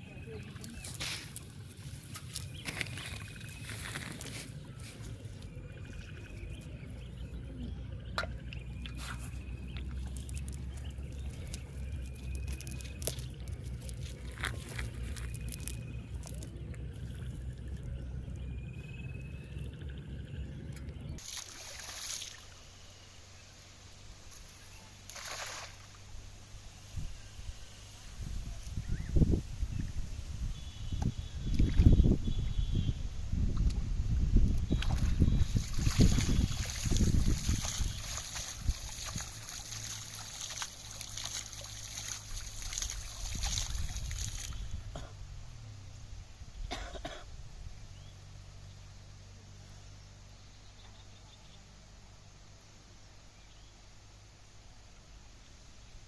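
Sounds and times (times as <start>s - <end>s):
water splashing and trickling: 0.0s - 26.4s, 34.4s - 45.1s.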